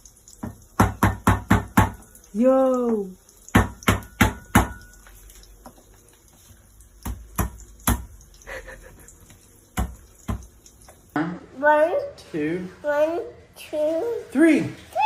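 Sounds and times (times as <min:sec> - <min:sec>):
sharp knocks and taps: 0:00.3 - 0:02.1, 0:02.9 - 0:06.0, 0:07.0 - 0:08.2, 0:09.3 - 0:11.0.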